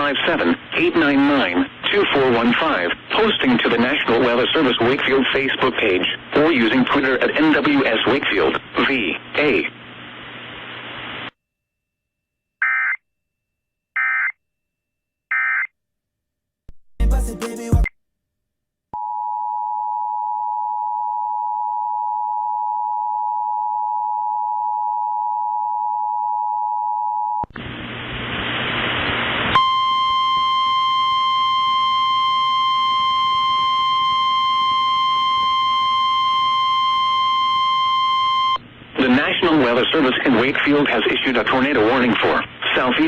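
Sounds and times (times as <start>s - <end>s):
static hiss: 7.6s - 11.4s, 27.6s - 29.6s
steady warning alarm tone: 29.6s - 38.6s.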